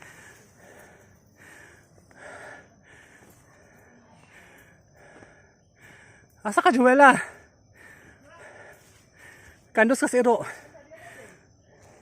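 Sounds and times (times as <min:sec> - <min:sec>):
person breathing heavily: 0:00.0 - 0:06.4, 0:07.2 - 0:09.7, 0:10.5 - 0:12.0.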